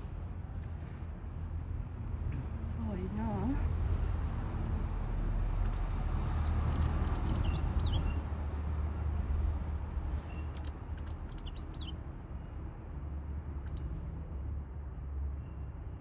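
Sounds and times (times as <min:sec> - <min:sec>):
steady low rumble: 0:00.0 - 0:15.2
bird chirping: 0:05.5 - 0:08.3, 0:09.3 - 0:12.0.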